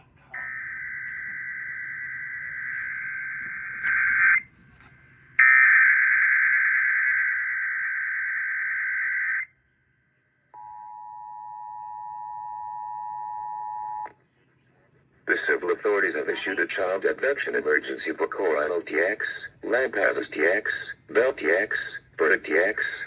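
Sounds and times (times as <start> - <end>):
two-tone attention signal: 0.4 - 4.4.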